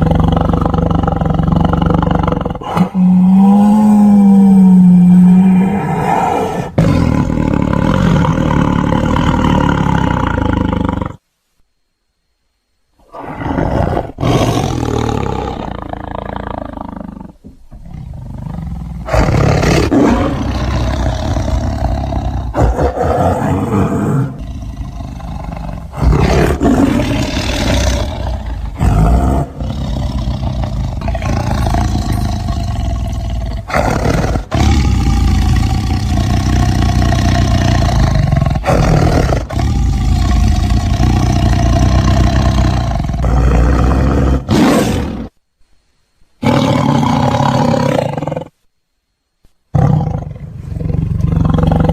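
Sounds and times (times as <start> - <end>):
tiger roaring: 0.0 - 11.2, 13.0 - 45.4, 46.4 - 48.6, 49.7 - 51.9.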